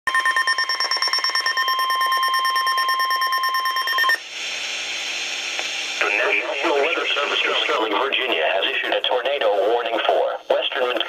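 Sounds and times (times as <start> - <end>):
radio hiss: 4.3 - 11.0.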